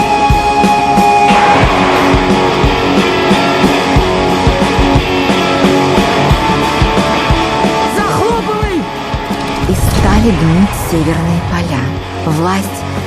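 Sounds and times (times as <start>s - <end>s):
guitar-led rock music: 0.0s - 13.0s
steady drum beat: 0.4s - 12.4s.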